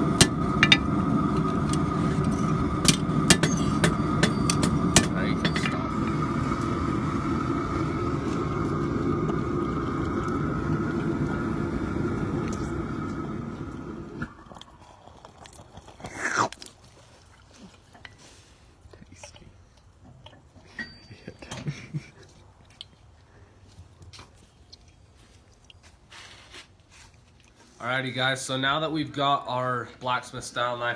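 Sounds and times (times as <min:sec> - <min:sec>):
light clicks and knocks: 0:00.0 - 0:05.9.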